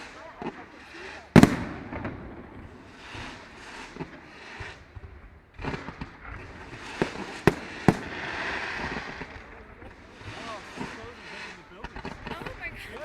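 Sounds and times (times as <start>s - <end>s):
fireworks bangs: 0.0s - 13.0s
fireworks crackling: 0.0s - 13.0s.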